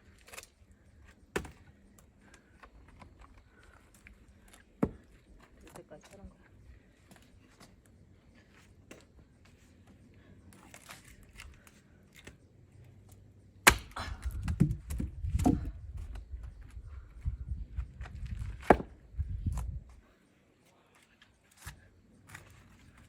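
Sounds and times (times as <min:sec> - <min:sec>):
axe chopping into log: 0:01.3 - 0:01.6, 0:13.6 - 0:15.7, 0:18.6 - 0:19.0.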